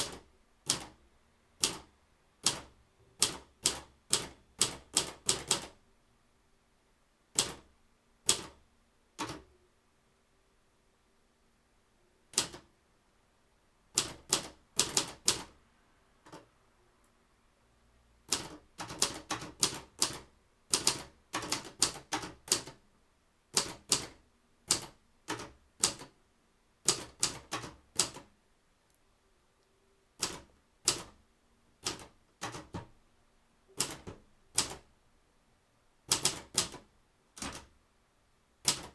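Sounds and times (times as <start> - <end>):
manual typewriter key strikes: 33.8 - 34.8, 38.6 - 38.9.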